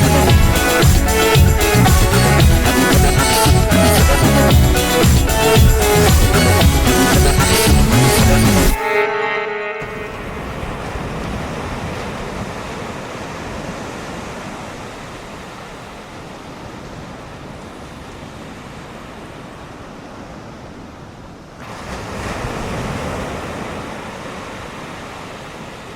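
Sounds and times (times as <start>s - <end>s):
ocean surf breaking: 0.0s - 25.9s.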